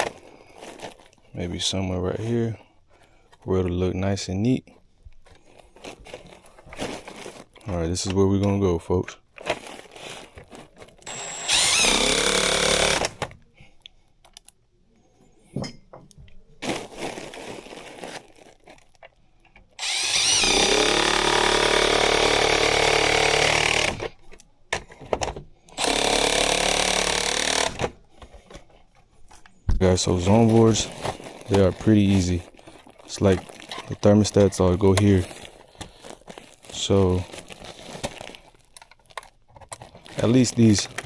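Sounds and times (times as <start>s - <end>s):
power drill driving screws: 11.1s - 13.2s, 19.8s - 24.2s, 25.8s - 27.9s.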